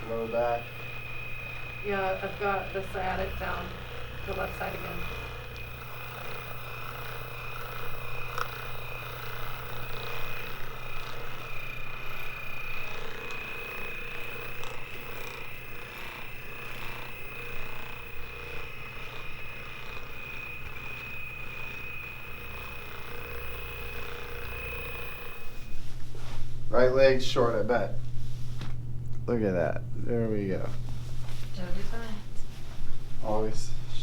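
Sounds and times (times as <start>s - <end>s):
low electrical hum: 0.0s - 34.0s
thin high whine: 0.0s - 34.0s
faint rustling: 25.6s - 28.9s, 30.5s - 34.0s.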